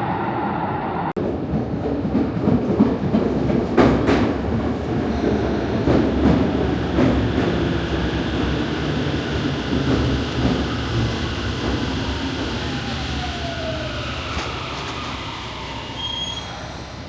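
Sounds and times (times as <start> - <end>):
train rumbling: 0.0 - 17.0
wheels clacking over rail joints: 12.6 - 15.7.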